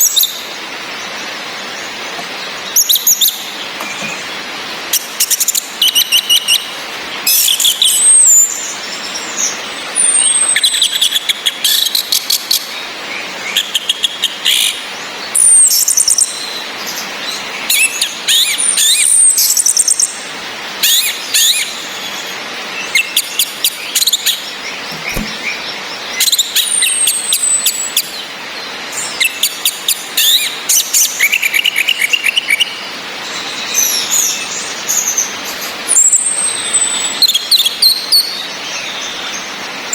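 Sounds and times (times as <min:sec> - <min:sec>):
thrushes calling: 0:20.8 - 0:32.6
rain hissing: 0:21.7 - 0:29.2.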